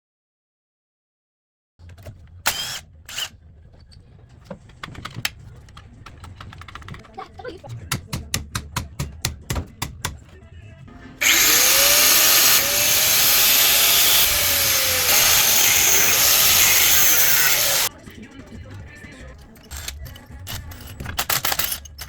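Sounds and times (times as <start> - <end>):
power tool running loudly: 11.2 - 17.9.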